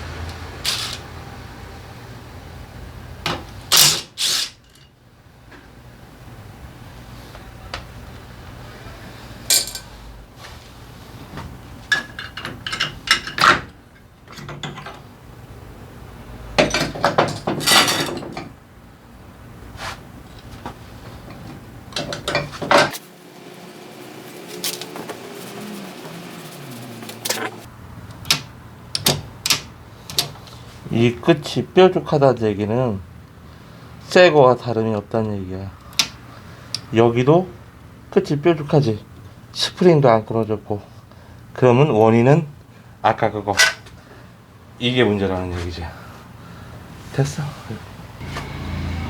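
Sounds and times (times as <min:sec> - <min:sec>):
metal parts and tools clinking: 0:00.6 - 0:01.0, 0:09.5 - 0:10.0, 0:11.9 - 0:15.0, 0:16.6 - 0:18.5.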